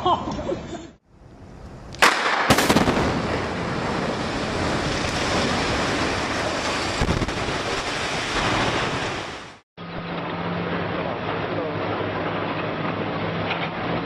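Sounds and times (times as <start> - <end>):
explosive blasts: 2.0 - 9.6
building collapsing rumble: 2.3 - 9.4.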